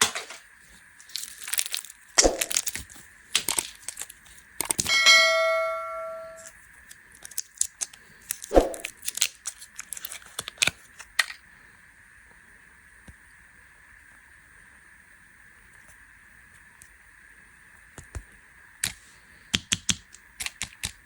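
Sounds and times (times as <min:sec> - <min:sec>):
candy wrapper crinkling and tearing: 0:00.7 - 0:04.9, 0:06.7 - 0:11.4
ringing tone: 0:04.9 - 0:06.5.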